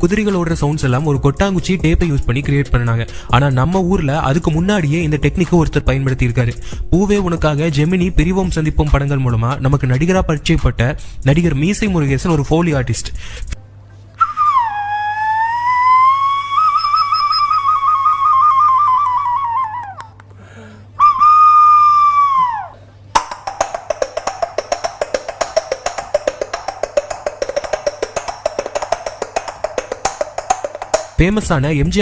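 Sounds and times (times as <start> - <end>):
wavering whistle-like tones: 14.2 - 20.0
coconut shells clip-clopping: 23.2 - 31.5.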